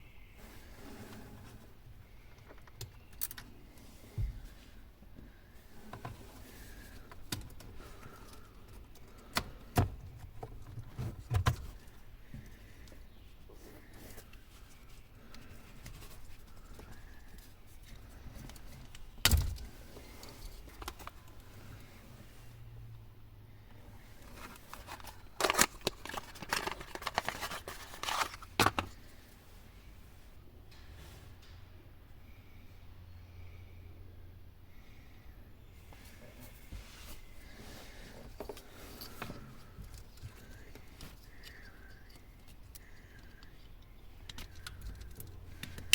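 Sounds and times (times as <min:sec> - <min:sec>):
ignition key clicks and rattles: 0:41.2 - 0:45.9.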